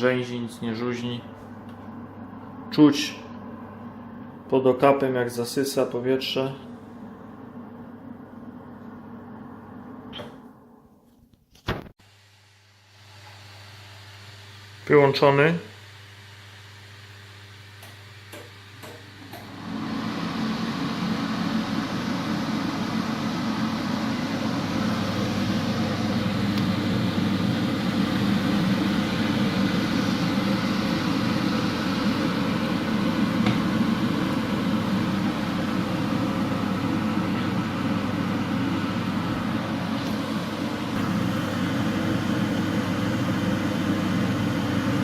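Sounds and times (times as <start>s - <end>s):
extractor fan rushing air: 19.3s - 45.0s.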